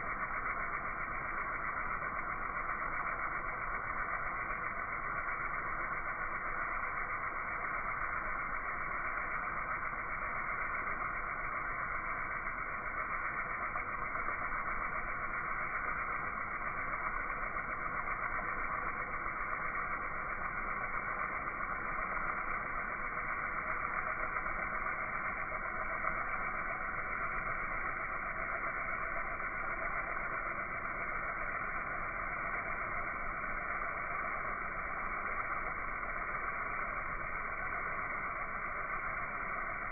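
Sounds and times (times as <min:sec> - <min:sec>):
pressure washer running: 0:00.0 - 0:39.9.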